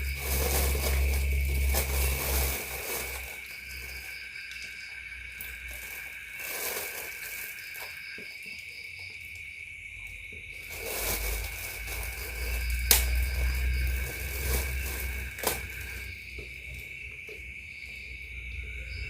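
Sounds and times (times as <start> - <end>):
night insects chorus: 0.0 - 19.0.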